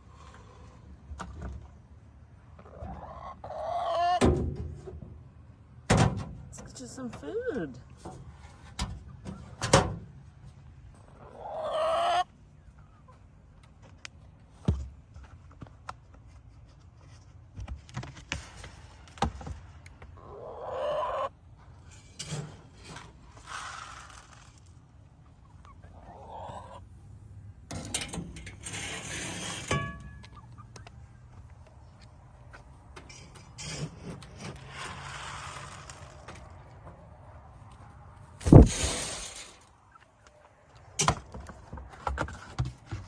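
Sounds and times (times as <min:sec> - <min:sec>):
chickens clucking: 0:02.4 - 0:04.6, 0:10.9 - 0:13.5, 0:20.0 - 0:21.8, 0:25.1 - 0:27.1, 0:30.0 - 0:34.2.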